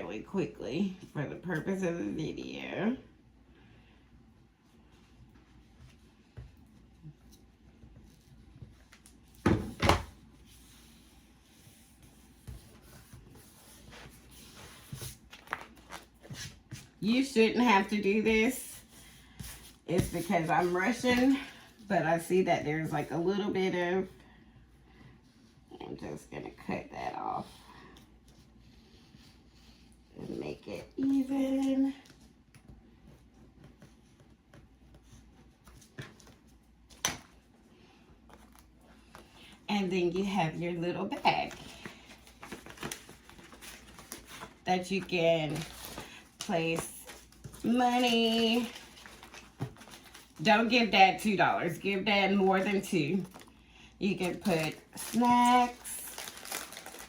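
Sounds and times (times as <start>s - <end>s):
paper rustling: 17.8s - 21.4s, 41.4s - 50.7s, 54.1s - 57.0s.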